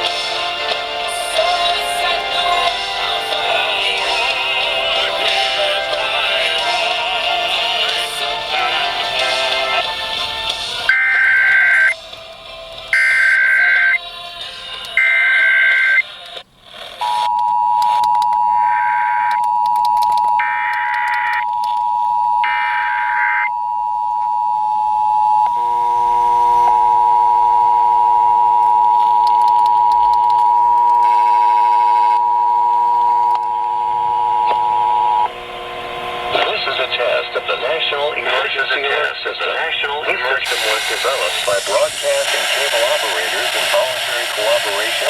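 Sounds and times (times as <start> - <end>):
screeching digital data burst: 10.9 - 12.0, 12.9 - 14.0, 15.0 - 16.1, 20.4 - 23.5, 40.4 - 45.0
two-tone attention signal: 10.9 - 12.0, 12.9 - 14.0, 15.0 - 16.1, 17.0 - 39.3.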